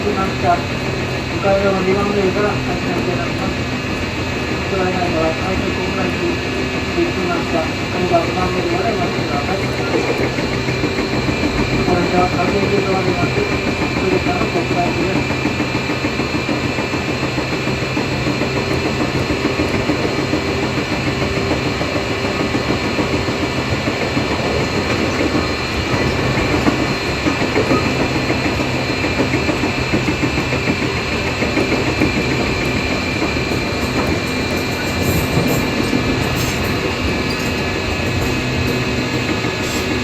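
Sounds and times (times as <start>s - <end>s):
train wheels rumbling on rail: 0.0s - 40.0s
wheels clicking over rail joints: 0.0s - 40.0s
high-pitched jet-like whine: 18.1s - 40.0s.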